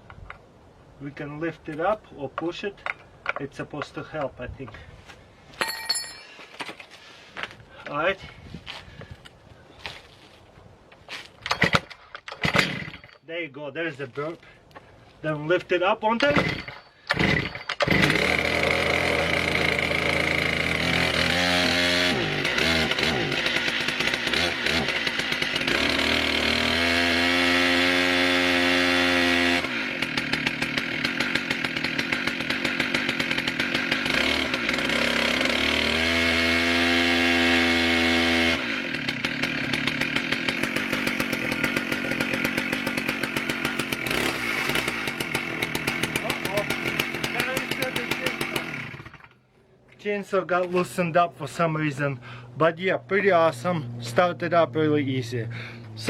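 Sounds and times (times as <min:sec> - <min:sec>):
chainsaw starting and idling: 0:11.4 - 0:13.2, 0:16.1 - 0:49.5
chainsaw revving: 0:11.5 - 0:13.1, 0:16.2 - 0:49.4, 0:55.5 - 0:56.0.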